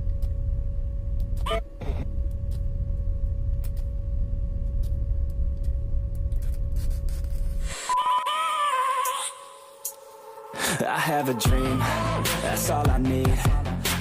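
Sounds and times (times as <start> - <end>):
crackling clicks: 2.2 - 4.0, 4.6 - 7.4
melodic music: 10.2 - 14.0.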